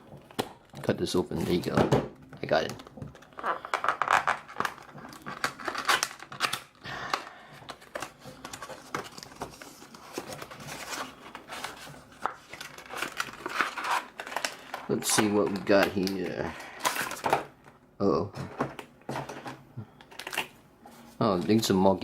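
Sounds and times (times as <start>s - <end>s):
packaging crinkling and tearing: 2.6s - 17.5s, 20.0s - 20.6s.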